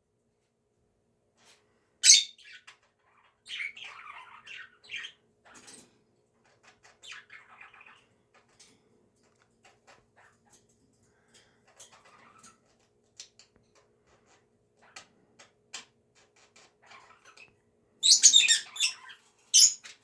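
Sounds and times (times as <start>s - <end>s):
budgerigar chirping: 2.0s - 2.7s, 16.9s - 19.9s.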